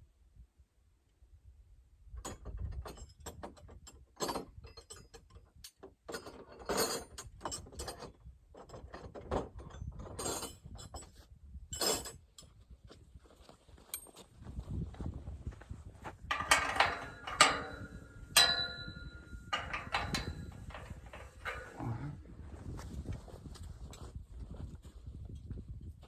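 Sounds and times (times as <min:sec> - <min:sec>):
metal hinge hardware clanking: 0:16.3 - 0:22.2.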